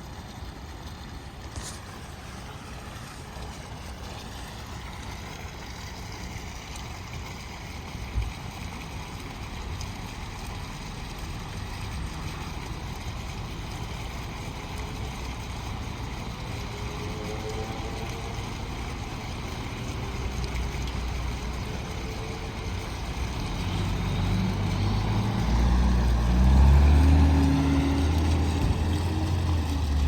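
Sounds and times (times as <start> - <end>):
diesel engine rumbling: 8.8 - 30.0.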